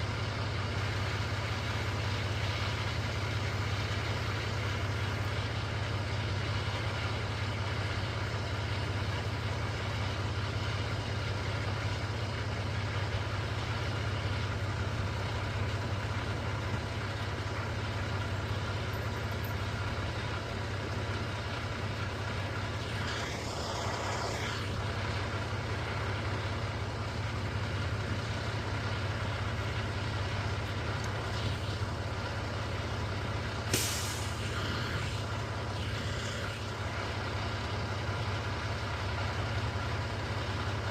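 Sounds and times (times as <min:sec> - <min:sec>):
diesel truck engine idling: 0:00.0 - 0:40.9
air brake hiss: 0:33.7 - 0:35.3.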